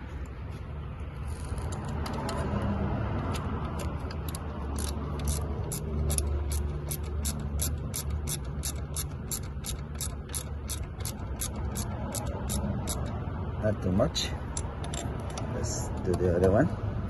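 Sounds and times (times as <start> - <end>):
hand ratchet clicking: 1.3 - 13.2, 14.5 - 16.6.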